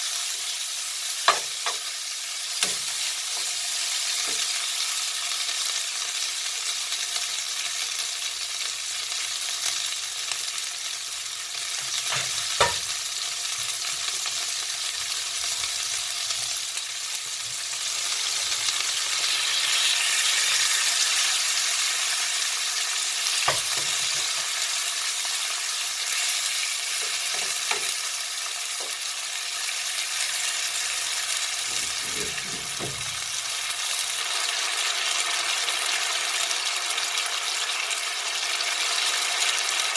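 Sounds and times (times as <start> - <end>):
food sizzling in a frying pan: 0.0 - 39.9
utensil knocking against pan: 1.3 - 1.8, 2.6 - 2.9, 12.1 - 12.9, 23.5 - 24.3.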